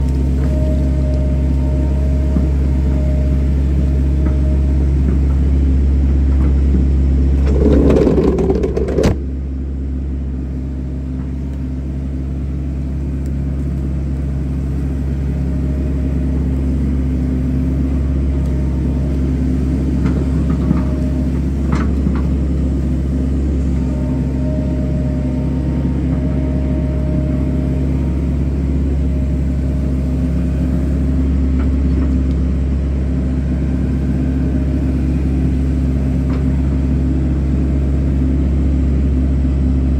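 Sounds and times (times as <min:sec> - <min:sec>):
excavator diesel engine humming: 0:00.0 - 0:39.9
rushing noise: 0:07.4 - 0:09.2.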